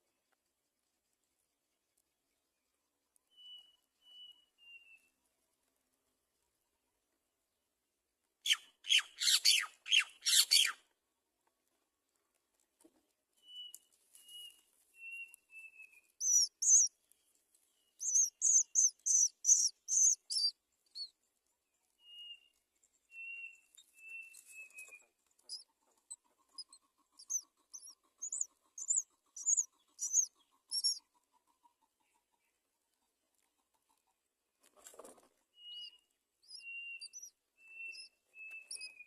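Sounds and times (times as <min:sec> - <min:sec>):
nestlings begging chirps: 0:16.1 - 0:16.9, 0:17.9 - 0:21.1, 0:23.6 - 0:31.0, 0:35.6 - 0:39.0.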